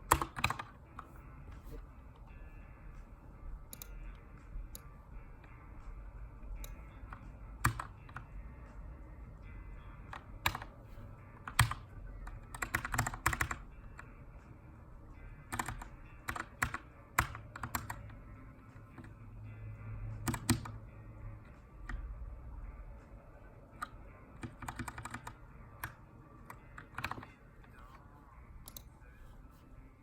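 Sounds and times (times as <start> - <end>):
mechanical keyboard typing: 0.0 - 0.8, 7.6 - 8.2, 10.1 - 10.7, 11.4 - 13.7, 15.5 - 18.1, 20.2 - 20.8, 23.8 - 27.4.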